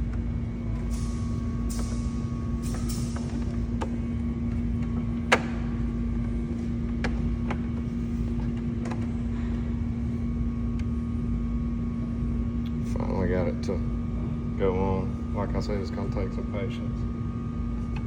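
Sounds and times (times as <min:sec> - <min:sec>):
low mechanical hum: 0:00.0 - 0:18.0.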